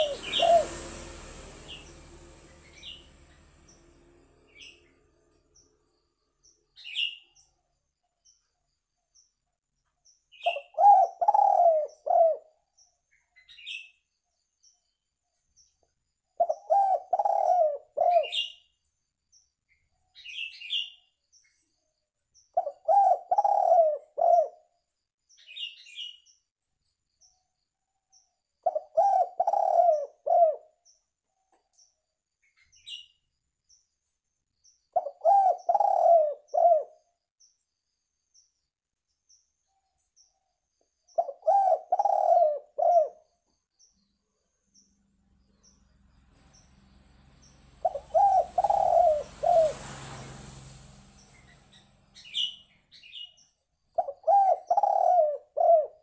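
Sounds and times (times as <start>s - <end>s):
dove cooing: 0.0s - 1.0s, 10.5s - 12.5s, 16.4s - 18.4s, 22.6s - 24.6s, 28.7s - 30.7s, 35.0s - 37.0s, 41.2s - 43.2s, 47.8s - 50.6s, 54.0s - 56.0s.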